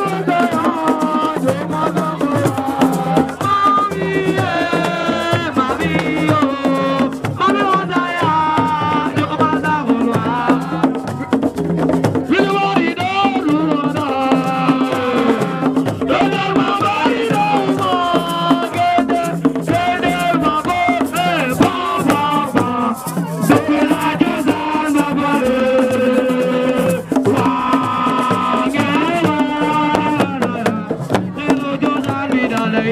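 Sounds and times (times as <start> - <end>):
shaken rattle: 17.6 - 29.7.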